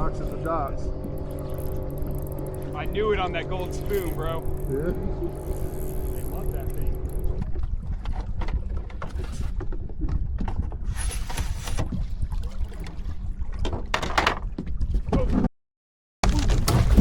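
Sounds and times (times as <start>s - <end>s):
wind rumble on microphone: 0.0s - 15.5s
boat knocking against rocks: 13.6s - 14.8s.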